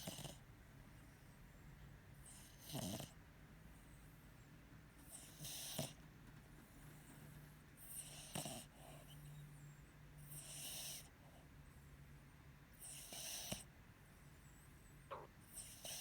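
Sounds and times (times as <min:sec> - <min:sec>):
dog snoring: 0:00.0 - 0:00.5, 0:02.2 - 0:03.2, 0:05.0 - 0:06.0, 0:07.0 - 0:09.5, 0:10.2 - 0:11.1, 0:12.7 - 0:13.7, 0:15.1 - 0:16.0.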